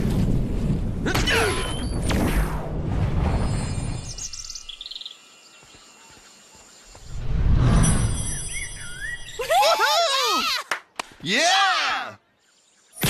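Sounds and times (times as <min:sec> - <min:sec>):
quick bird chirps: 0:03.4 - 0:09.4.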